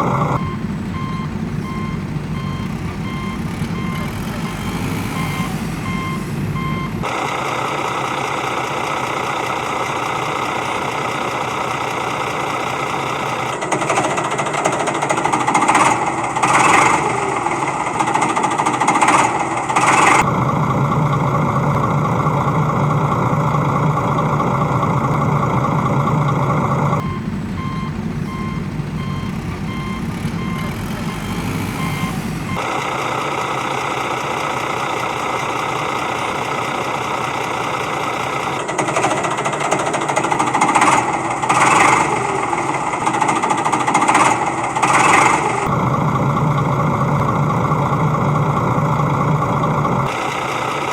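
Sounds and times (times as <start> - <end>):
reversing alarm beeping: 0.0 - 7.2, 27.0 - 32.8
engine running: 0.0 - 50.9.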